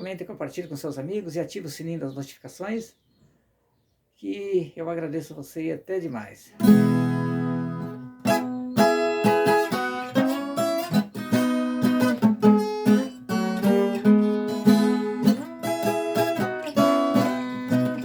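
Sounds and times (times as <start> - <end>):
folk guitar solo: 6.6 - 18.0.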